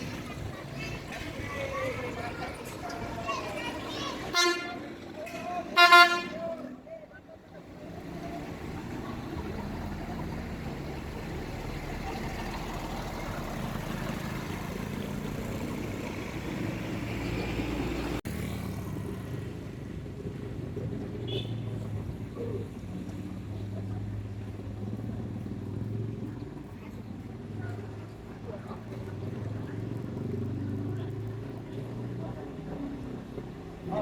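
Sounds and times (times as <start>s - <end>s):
road and wind noise: 0.0s - 34.0s
vehicle engine running: 7.7s - 34.0s.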